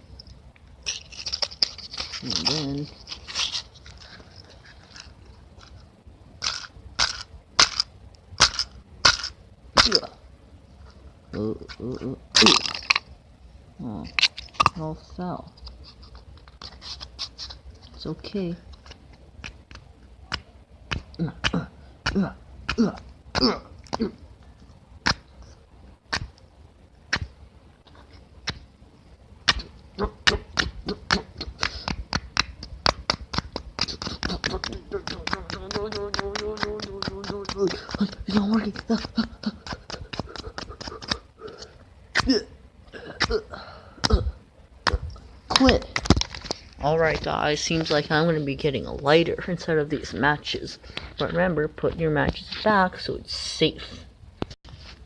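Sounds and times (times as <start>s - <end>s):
matches scraping on box: 0.9s - 5.8s.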